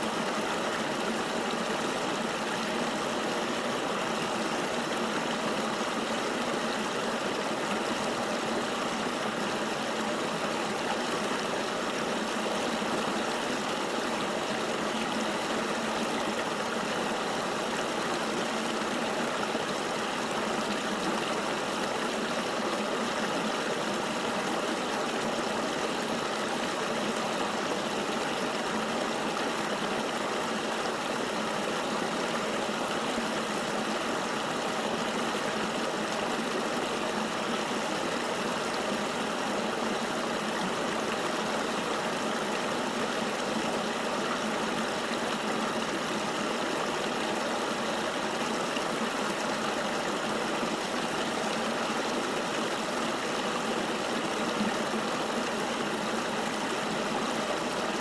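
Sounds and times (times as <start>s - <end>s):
river water flowing: 0.0s - 58.0s.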